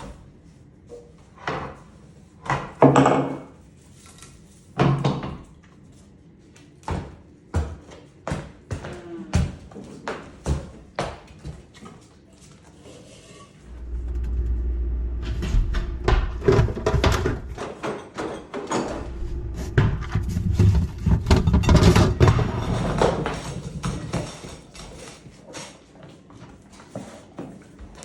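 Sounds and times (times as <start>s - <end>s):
low rumble: 13.7s - 17.6s, 18.9s - 23.0s
objects knocking and clattering: 13.7s - 25.2s.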